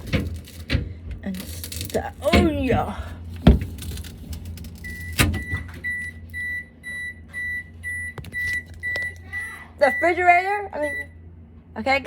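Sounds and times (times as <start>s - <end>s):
low steady hum: 0.0s - 12.0s
refrigerator alarm beeping: 1.4s - 11.2s.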